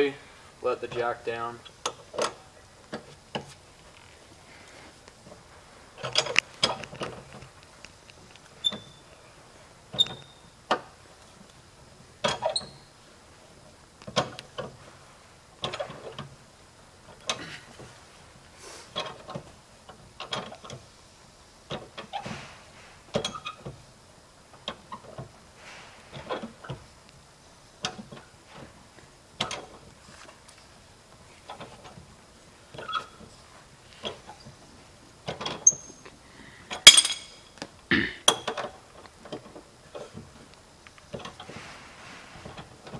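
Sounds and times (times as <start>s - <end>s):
car jack clicking and clanking: 0.9s - 3.6s, 6.0s - 7.6s, 12.2s - 12.8s, 14.0s - 14.9s, 15.6s - 16.4s, 18.9s - 20.9s, 21.7s - 23.8s, 26.0s - 26.9s, 27.8s - 28.7s, 29.4s - 29.8s, 32.7s - 33.3s, 35.2s - 36.0s, 36.7s - 37.6s, 38.2s - 40.4s, 41.0s - 41.8s.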